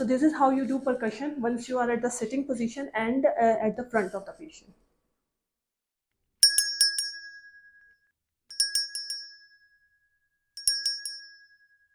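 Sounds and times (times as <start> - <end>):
bright bell-like chime: 6.4 - 10.0, 10.6 - 11.9.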